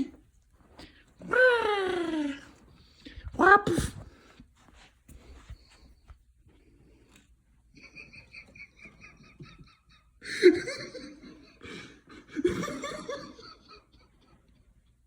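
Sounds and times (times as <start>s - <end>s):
person laughing: 7.8s - 14.1s.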